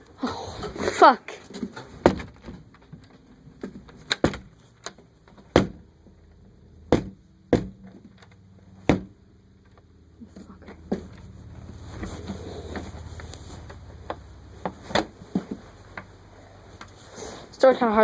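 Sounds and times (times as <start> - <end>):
door banging shut: 4.0 - 4.6.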